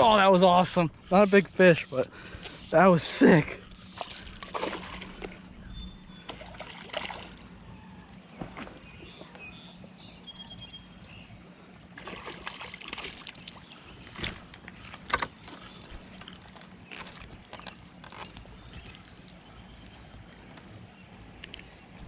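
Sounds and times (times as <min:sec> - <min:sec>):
river water sloshing: 0:00.0 - 0:22.0
sharp water splashes: 0:03.8 - 0:05.3, 0:06.3 - 0:07.4, 0:12.0 - 0:14.4.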